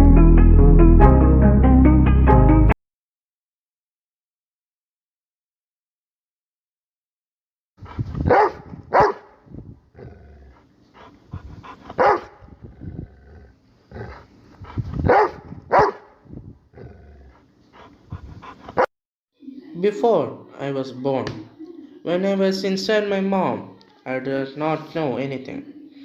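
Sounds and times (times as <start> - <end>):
quieter low dog sounds: 7.8 - 18.9
dog barking: 8.2 - 9.4, 12.0 - 12.5, 15.0 - 16.2.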